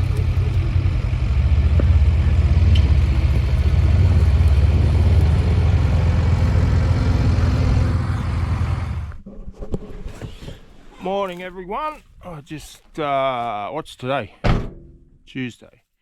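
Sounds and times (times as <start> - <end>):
heavy engine rumbling: 0.0 - 9.2.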